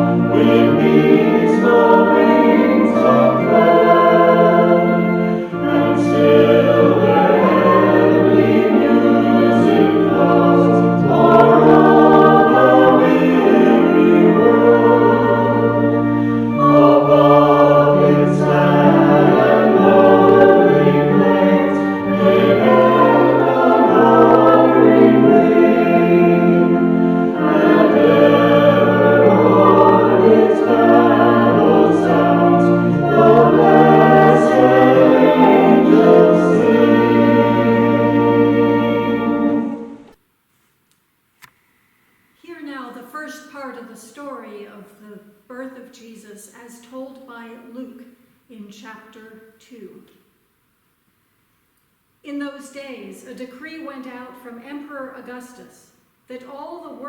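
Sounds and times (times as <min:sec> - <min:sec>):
choir singing a hymn: 0:00.0 - 0:40.2.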